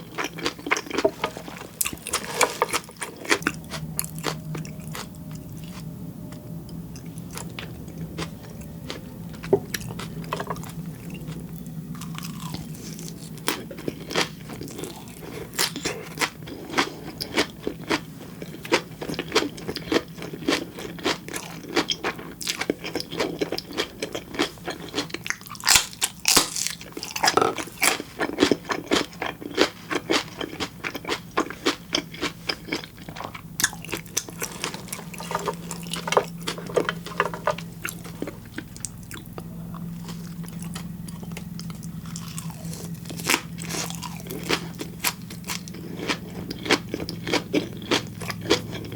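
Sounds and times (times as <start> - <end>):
close chewing: 0.0 - 48.9
fish roe popping and crunching: 25.3 - 28.0.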